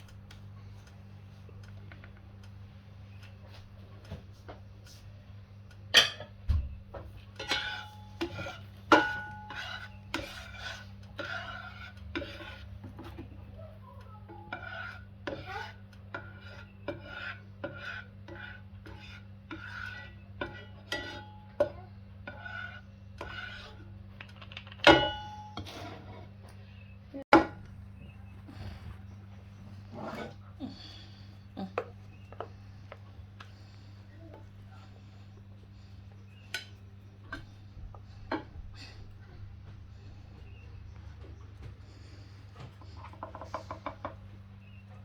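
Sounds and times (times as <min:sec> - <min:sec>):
metal utensil scraping cookware: 0:05.9 - 0:06.4, 0:07.2 - 0:13.4, 0:14.2 - 0:26.3, 0:34.7 - 0:38.5.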